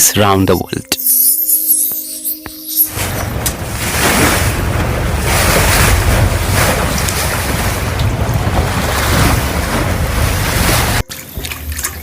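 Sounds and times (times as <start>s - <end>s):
ocean surf breaking: 2.9s - 11.0s.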